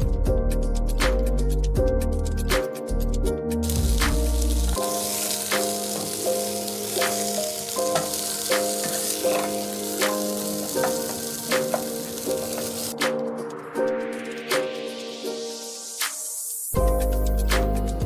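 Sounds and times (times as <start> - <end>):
background music with beat: 0.0 - 18.0
food sizzling in a pan: 3.6 - 13.0.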